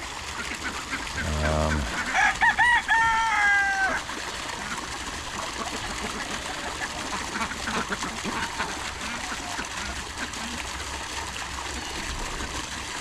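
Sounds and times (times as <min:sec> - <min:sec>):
rooster crowing: 0:02.0 - 0:04.0.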